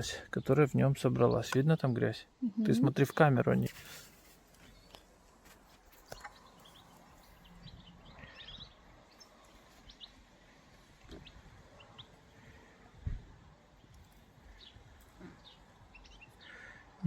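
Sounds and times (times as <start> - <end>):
faint bird chirps: 6.0 - 10.2, 13.7 - 17.0.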